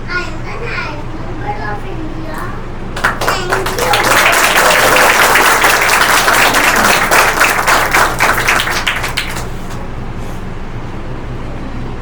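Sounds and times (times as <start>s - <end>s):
steady low hum: 0.0s - 12.0s
audience applauding: 3.0s - 9.8s.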